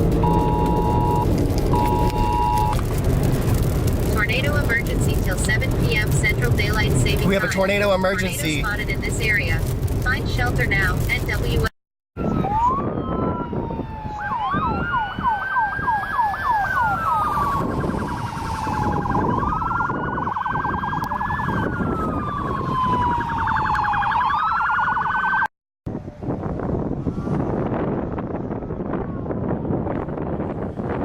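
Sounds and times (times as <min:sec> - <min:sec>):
electronic siren wailing and yelping: 0:00.2 - 0:02.8, 0:12.2 - 0:25.5.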